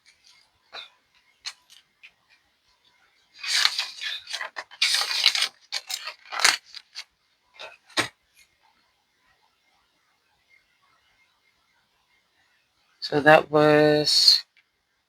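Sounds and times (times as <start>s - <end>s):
banknotes rustling: 1.2s - 2.4s, 3.3s - 8.1s.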